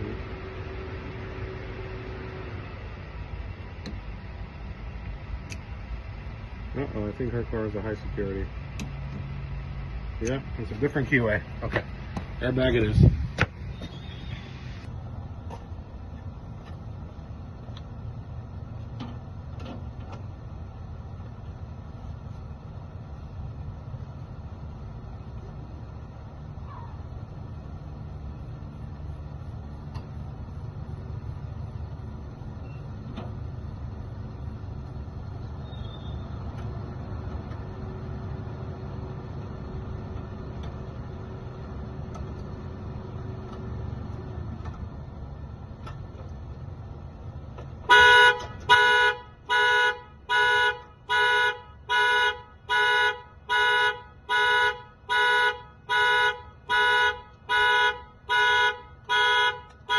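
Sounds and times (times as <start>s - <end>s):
low steady rumble: 0.0s - 59.9s
car alarm horn honking: 47.9s - 59.9s.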